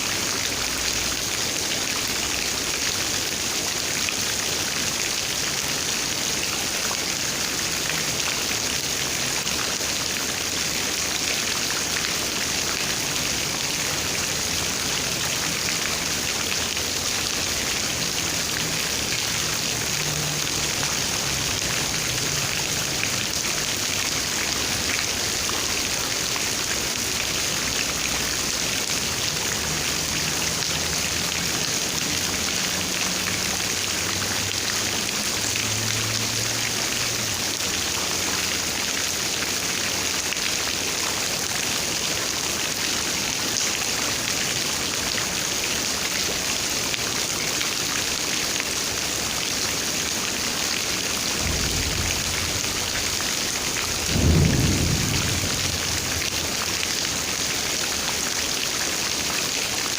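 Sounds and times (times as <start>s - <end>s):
steady rain falling: 0.0s - 59.9s
low rumble: 51.4s - 56.6s.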